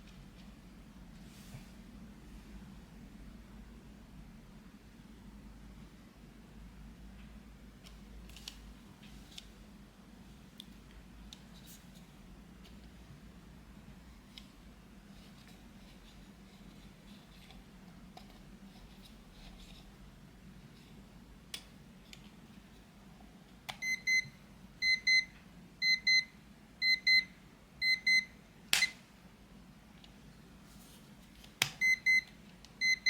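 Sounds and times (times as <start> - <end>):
alarm clock double beeps: 23.8 - 28.9.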